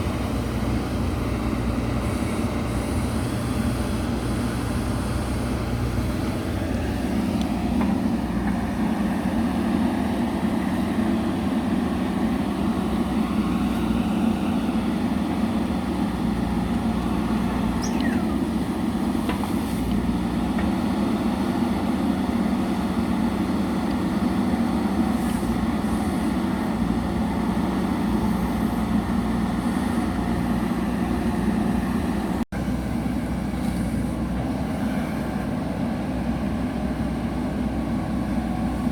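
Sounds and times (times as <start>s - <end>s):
diesel engine running: 0.0s - 38.9s.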